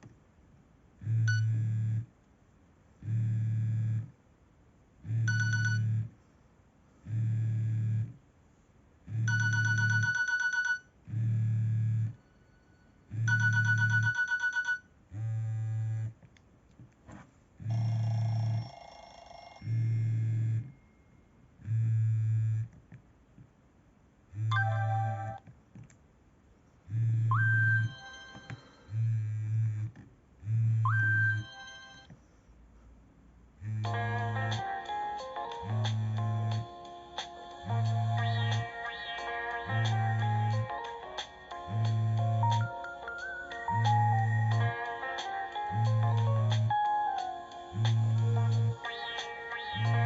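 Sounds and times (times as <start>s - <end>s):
electronic ringtone bursts with buzz: 5.2s - 6.0s, 9.2s - 10.8s, 12.1s - 14.8s, 24.4s - 25.4s, 27.3s - 29.0s, 30.8s - 32.1s, 37.6s - 50.0s.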